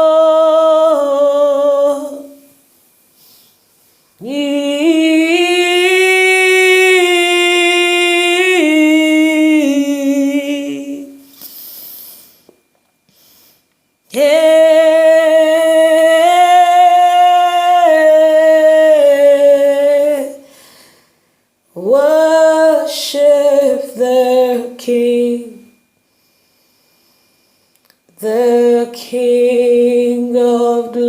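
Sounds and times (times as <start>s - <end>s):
woman breathing in: 11.3s - 13.8s, 20.4s - 21.6s, 26.0s - 27.8s.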